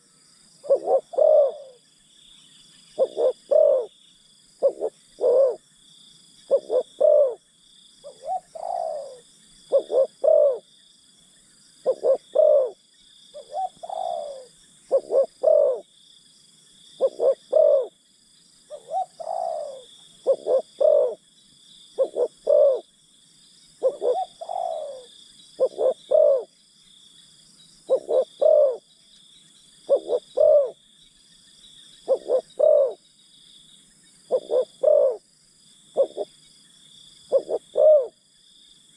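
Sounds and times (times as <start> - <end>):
doves cooing: 0.6 - 1.8, 2.9 - 3.9, 4.6 - 5.6, 6.5 - 7.4, 8.0 - 10.6, 11.8 - 12.8, 13.4 - 15.9, 17.0 - 18.0, 18.7 - 21.2, 22.0 - 22.8, 23.8 - 26.5, 27.9 - 28.8, 29.9 - 30.8, 32.1 - 33.0, 34.3 - 35.2, 36.0 - 36.3, 37.3 - 38.2.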